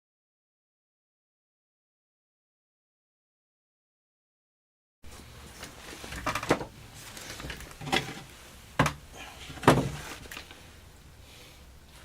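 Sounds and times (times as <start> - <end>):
cabinet door knocks and clunks: 9.6 - 10.0.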